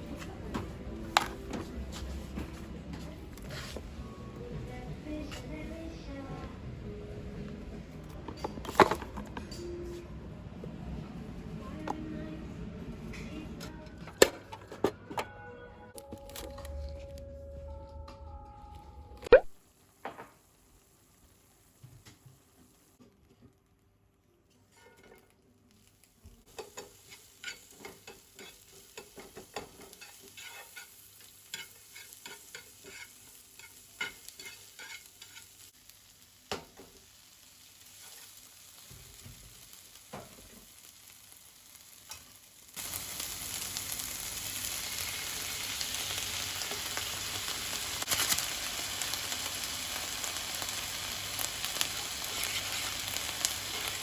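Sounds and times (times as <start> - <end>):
food sizzling in a frying pan: 19.6 - 23.7, 24.5 - 54.0.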